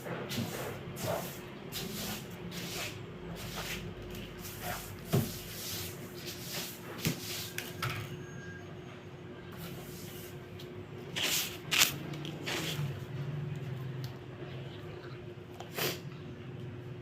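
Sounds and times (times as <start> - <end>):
brushing or wiping strokes: 0.3 - 7.6.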